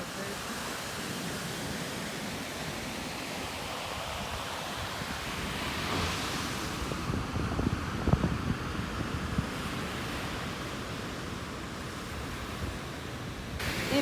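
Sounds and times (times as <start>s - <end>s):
ocean surf washing on beach: 0.0s - 14.0s
wind buffeting microphone: 3.9s - 14.0s.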